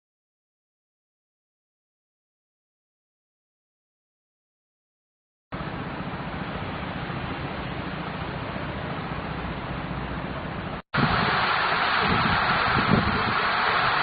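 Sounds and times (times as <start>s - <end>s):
steady rushing noise: 5.6s - 14.0s.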